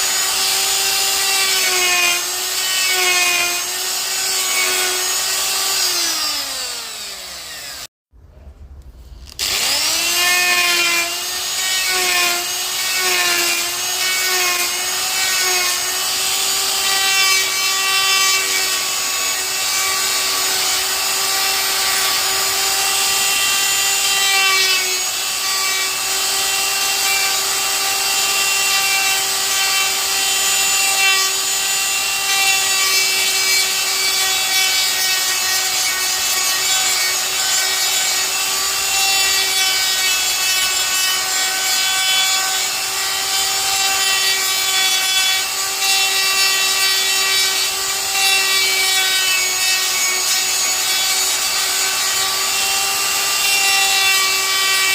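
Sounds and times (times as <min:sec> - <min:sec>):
bit grinding wood: 0:00.0 - 0:07.9, 0:09.2 - 0:54.9
die grinder whine: 0:00.0 - 0:07.9, 0:09.2 - 0:54.9.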